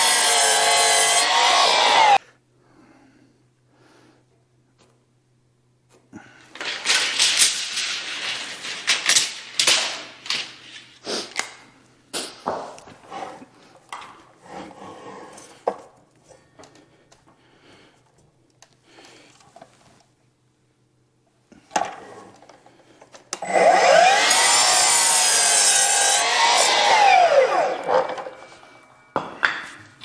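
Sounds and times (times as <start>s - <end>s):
objects clattering and rattling: 6.4s - 11.4s.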